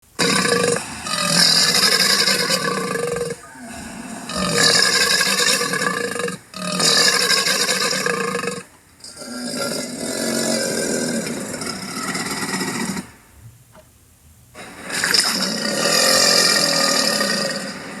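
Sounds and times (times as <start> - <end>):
cartoon alligator vocalization: 0.2 - 8.6.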